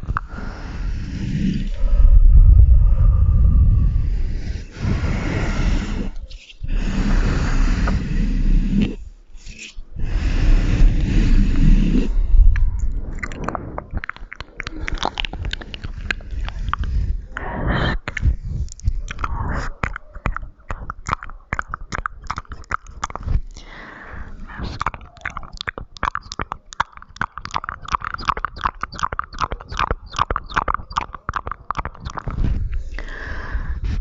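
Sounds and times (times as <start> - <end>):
wet mouth clicks and smacks: 12.4 - 23.7, 24.5 - 33.2.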